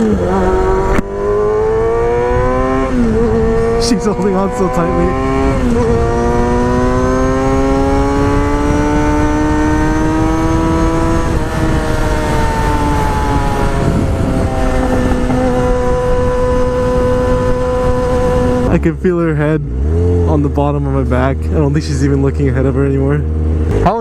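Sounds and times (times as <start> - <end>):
wind rushing: 0.0 - 18.7
motorcycle engine revving: 0.0 - 24.0.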